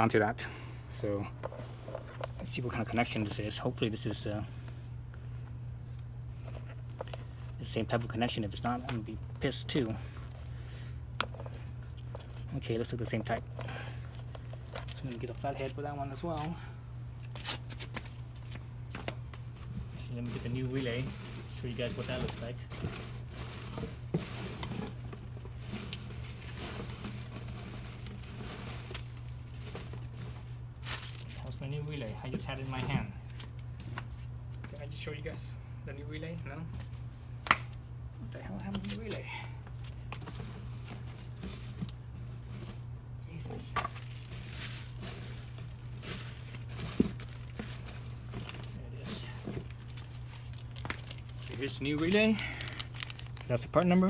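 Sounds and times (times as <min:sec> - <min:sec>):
steady low hum: 0:00.0 - 0:54.0
small parts clicking and rustling: 0:13.2 - 0:16.6, 0:43.8 - 0:54.0
small parts rustling and clicking: 0:24.5 - 0:34.6, 0:43.7 - 0:54.0.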